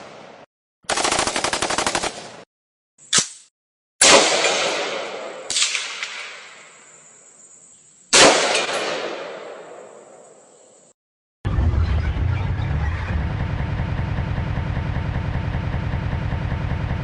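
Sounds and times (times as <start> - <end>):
gunshots with echoing decay: 4.0 - 6.8, 8.1 - 10.4.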